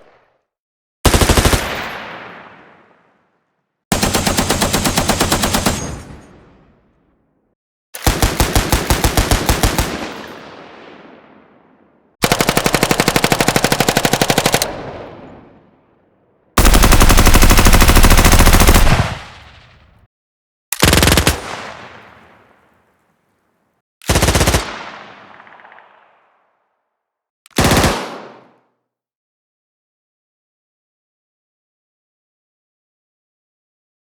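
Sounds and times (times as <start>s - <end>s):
machine gun firing bursts: 1.1s - 2.0s, 3.9s - 6.2s, 8.0s - 10.4s, 12.2s - 14.8s, 16.6s - 19.7s, 20.8s - 21.7s, 24.0s - 25.0s, 27.5s - 28.4s.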